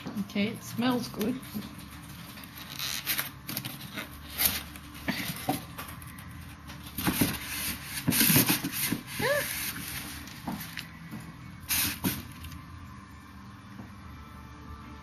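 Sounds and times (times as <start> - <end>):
cardboard and plastic rustling: 0.9 - 12.6.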